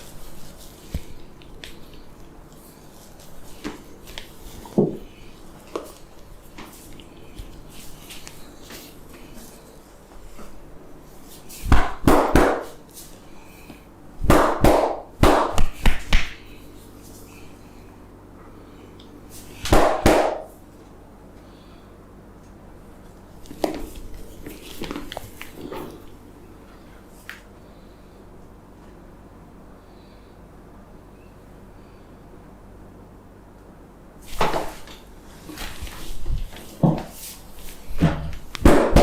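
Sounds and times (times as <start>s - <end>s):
hands slapping on a head: 14.3s - 16.4s, 19.6s - 20.5s.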